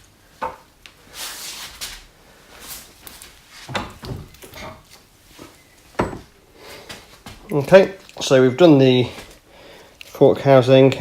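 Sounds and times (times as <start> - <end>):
metal knocks: 6.0 - 6.3.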